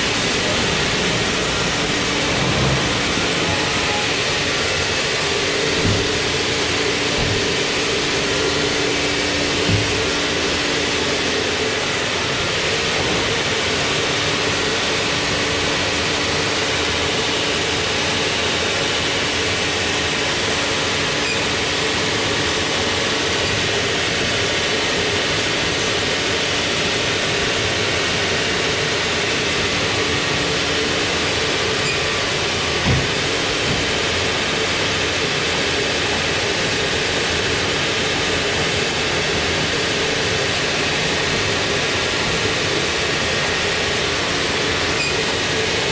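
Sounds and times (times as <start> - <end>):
sawmill machinery running: 0.0 - 45.9
single knock: 7.2 - 7.6, 9.6 - 10.0.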